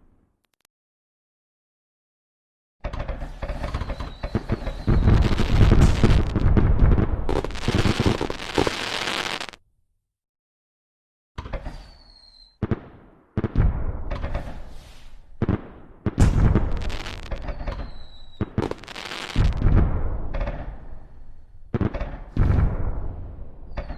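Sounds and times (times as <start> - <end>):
firework bangs and crackling: 3.4 - 9.6, 12.6 - 23.9
firework whistle: 3.6 - 6.4, 7.3 - 9.6, 11.7 - 12.6, 16.7 - 19.6.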